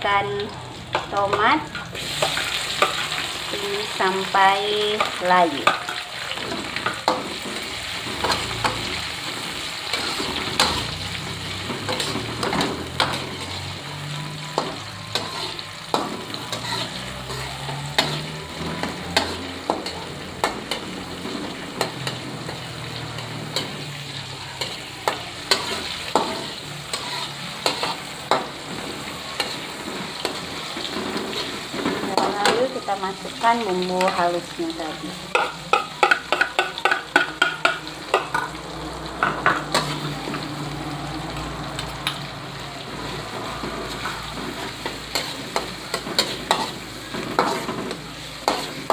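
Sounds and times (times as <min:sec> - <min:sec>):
vegetables sizzling in hot oil: 0:00.0 - 0:48.9
spatula scraping and tapping pan: 0:11.6 - 0:13.7, 0:14.4 - 0:23.8, 0:24.6 - 0:28.6, 0:35.3 - 0:38.6, 0:43.6 - 0:48.9.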